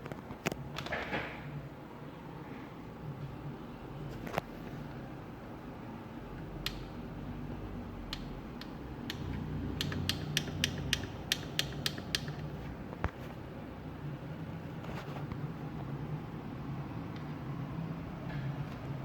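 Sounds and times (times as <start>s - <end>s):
steady low hum: 0.0s - 19.0s
sharp mechanical clicks: 8.1s - 12.5s.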